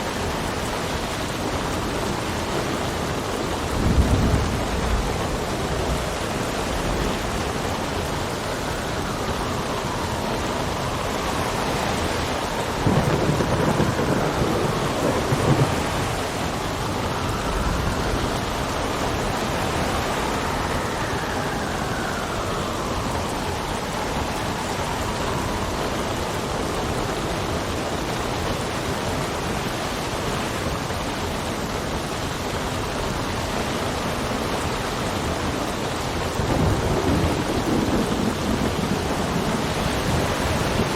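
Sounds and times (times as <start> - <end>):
rain and wind rushing: 0.0 - 40.9
wind whistling: 0.0 - 40.9
thunder rumble: 0.1 - 27.0, 35.2 - 40.9.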